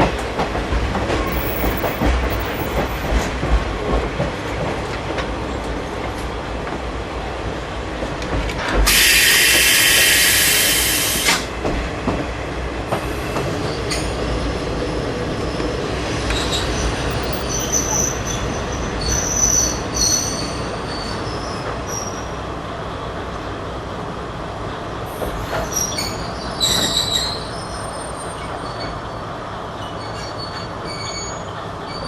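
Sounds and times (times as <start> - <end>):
train running rumble: 0.0 - 32.0
loud air hiss: 8.9 - 11.5
wheels squealing under braking: 16.2 - 22.4, 25.5 - 29.0, 29.8 - 32.0.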